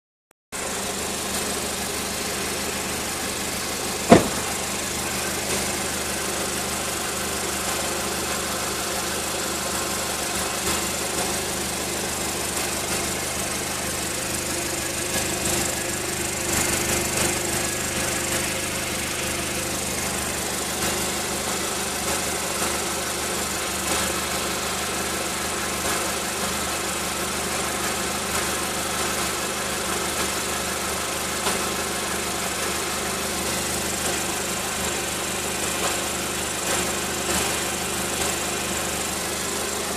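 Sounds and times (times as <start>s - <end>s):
exhaust rattle: 0.6s - 26.1s, 26.8s - 39.9s
car engine idling: 0.6s - 39.9s
sharp knock: 4.1s - 4.6s.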